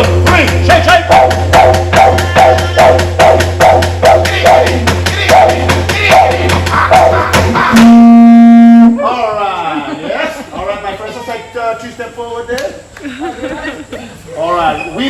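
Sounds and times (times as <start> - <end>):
didgeridoo drone: 0.0 - 9.0.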